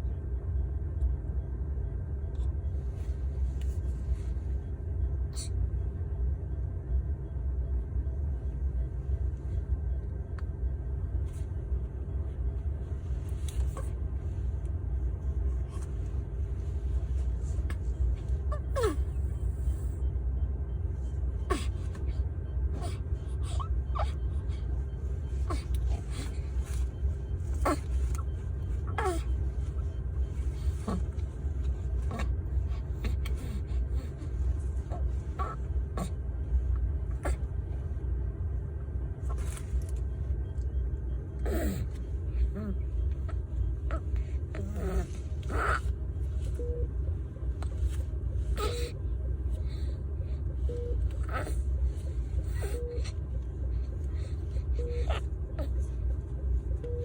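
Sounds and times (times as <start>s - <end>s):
steady low rumble: 0.0s - 57.0s
baby breathy sounds: 41.4s - 45.9s, 48.4s - 50.4s, 51.0s - 55.9s.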